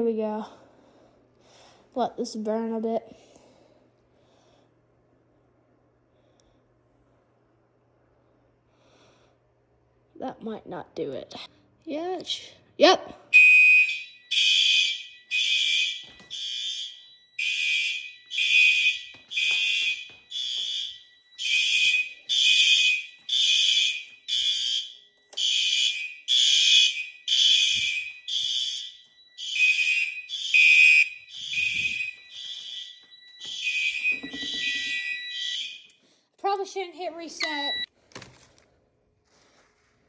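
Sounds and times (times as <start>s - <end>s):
fire alarm horns pulsing: 13.3s - 36.2s, 37.2s - 37.9s.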